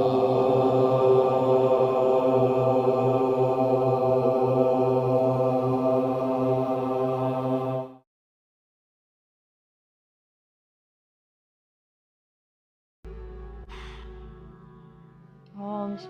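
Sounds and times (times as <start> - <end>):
person chanting on a low note: 0.0 - 8.0.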